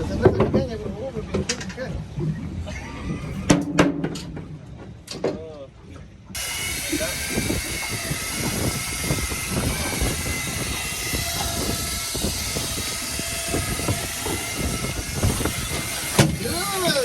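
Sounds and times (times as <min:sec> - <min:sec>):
boat engine hum: 0:05.7 - 0:17.0
wind buffeting microphone: 0:06.3 - 0:17.0.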